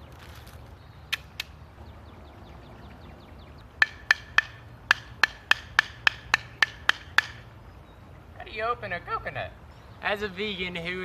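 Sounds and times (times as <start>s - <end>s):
knocks on a coconut: 3.8s - 7.4s.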